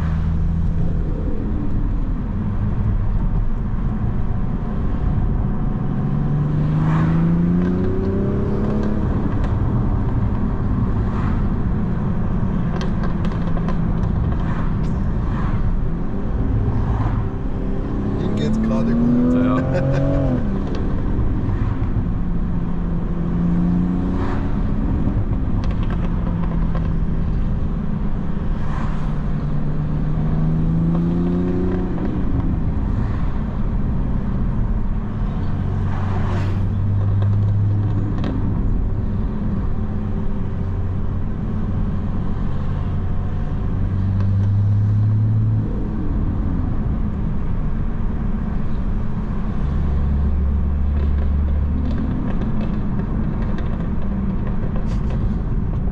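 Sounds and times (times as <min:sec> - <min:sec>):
car engine driving: 0:00.0 - 0:55.9
road noise: 0:00.0 - 0:55.9.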